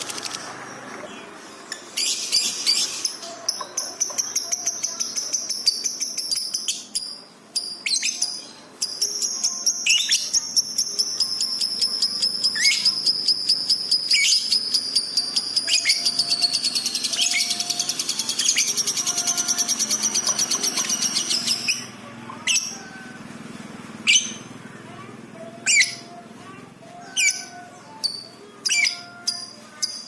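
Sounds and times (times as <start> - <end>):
bird chirps: 0.0 - 23.1, 25.6 - 26.2, 26.9 - 30.0
bird trilling: 9.9 - 23.2, 24.0 - 24.5, 25.6 - 26.2.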